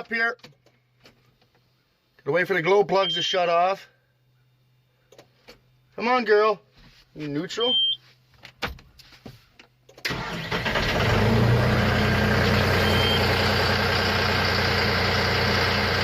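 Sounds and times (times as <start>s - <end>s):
diesel tractor engine starting and idling: 10.0s - 16.0s.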